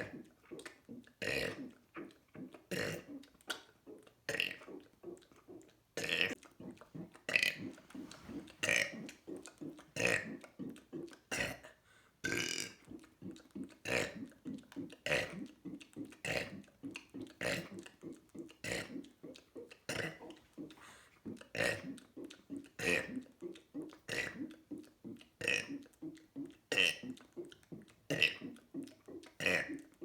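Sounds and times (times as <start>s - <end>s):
person burping: 12.2s - 12.7s.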